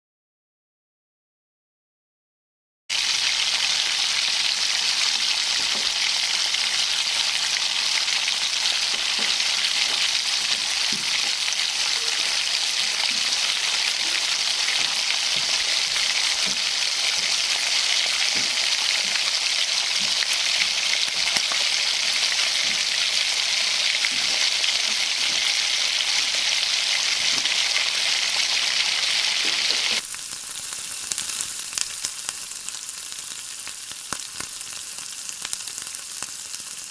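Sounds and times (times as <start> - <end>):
food sizzling in hot oil: 2.9 - 36.9.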